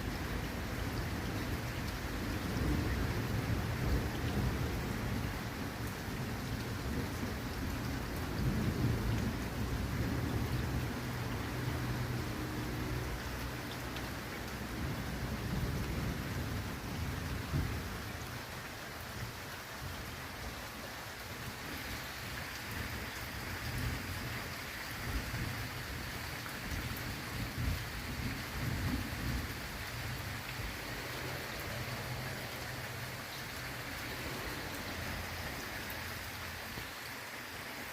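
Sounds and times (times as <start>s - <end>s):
heavy rain: 0.0s - 37.9s
low rolling thunder: 2.1s - 12.2s, 14.7s - 18.0s, 26.7s - 32.4s.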